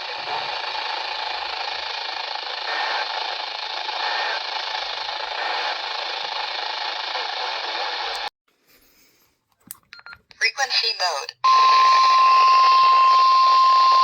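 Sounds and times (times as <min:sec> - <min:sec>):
radio static hiss: 0:02.6 - 0:03.3, 0:03.9 - 0:08.3.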